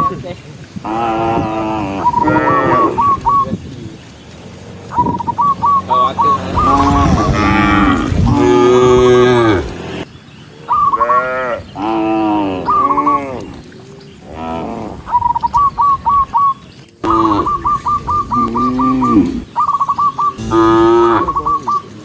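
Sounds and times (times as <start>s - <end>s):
cattle mooing: 0.9s - 3.1s, 4.3s - 10.1s, 18.4s - 19.4s, 20.4s - 21.5s.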